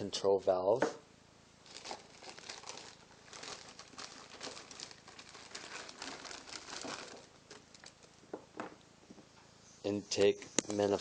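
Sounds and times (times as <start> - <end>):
rustling and clicking of small parts: 1.7 - 8.8.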